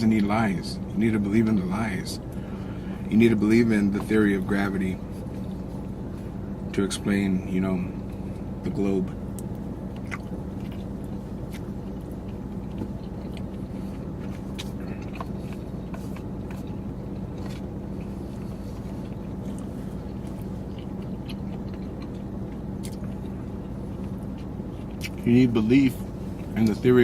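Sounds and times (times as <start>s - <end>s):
low hum inside a car: 0.0s - 27.0s
chewing and eating: 1.4s - 27.0s.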